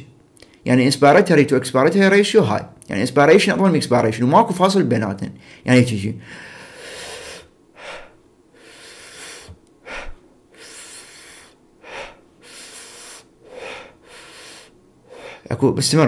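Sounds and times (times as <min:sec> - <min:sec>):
man breathing: 0:05.4 - 0:15.5.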